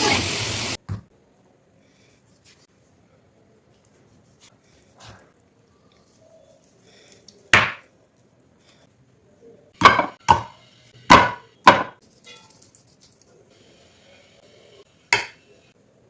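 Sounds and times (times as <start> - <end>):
knife chopping on cutting board: 11.1 - 12.0.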